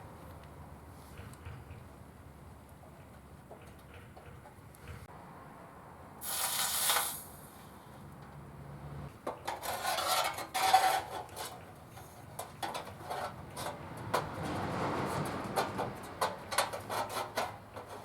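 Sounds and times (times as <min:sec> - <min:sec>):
metal rasping scrape: 0:09.4 - 0:18.0.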